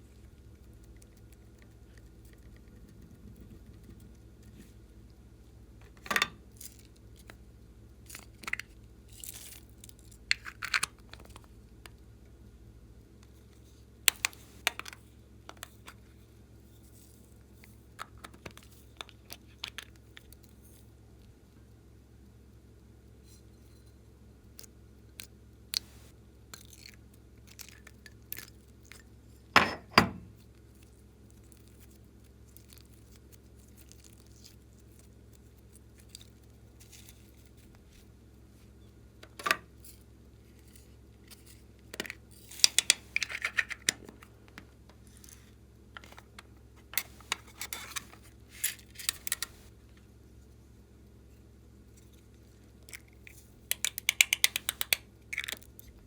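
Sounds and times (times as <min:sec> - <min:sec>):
slime clicking and crackling: 0:53.0 - 0:55.9.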